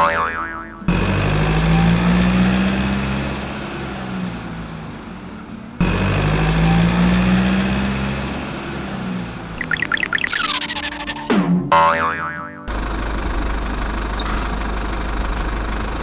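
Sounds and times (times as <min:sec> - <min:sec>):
cartoon boing: 0:00.0 - 0:00.9, 0:09.6 - 0:12.7
truck engine running: 0:00.0 - 0:16.0
falling whistle: 0:09.6 - 0:11.3.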